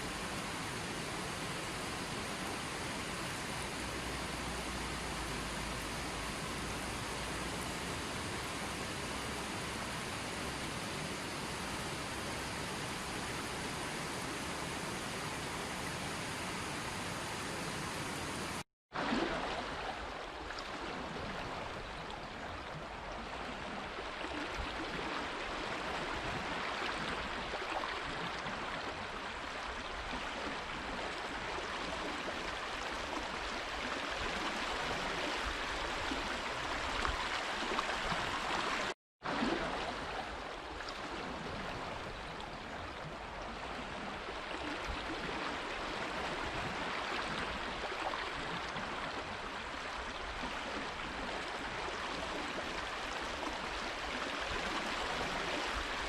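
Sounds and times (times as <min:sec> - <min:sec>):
running water gurgling: 0:00.0 - 0:56.0.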